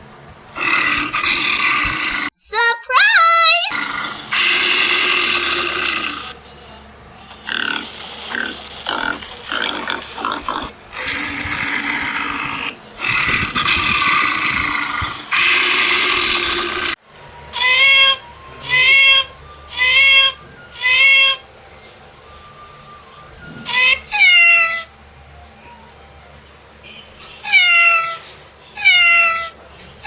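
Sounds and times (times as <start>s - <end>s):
pig grunts and squeals: 0.6s - 2.3s, 3.7s - 6.4s, 7.3s - 21.4s, 23.5s - 24.9s, 28.8s - 29.6s
high-pitched calls: 3.7s - 6.4s, 7.3s - 21.5s, 23.5s - 24.9s.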